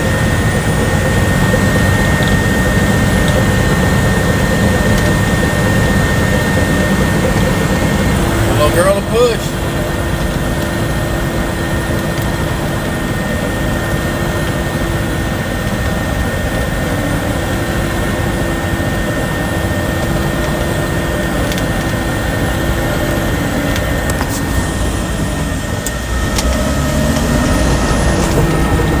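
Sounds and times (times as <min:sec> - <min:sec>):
bulldozer diesel engine running: 0:00.0 - 0:29.0
high whine: 0:00.0 - 0:29.0.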